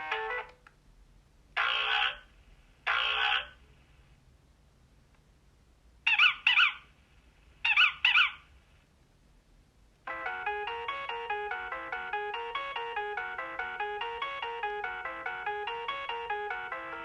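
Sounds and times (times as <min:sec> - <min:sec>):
electronic ringtone melody: 0:00.0 - 0:00.5, 0:10.1 - 0:17.0
chirping double note ringtone: 0:10.1 - 0:17.0.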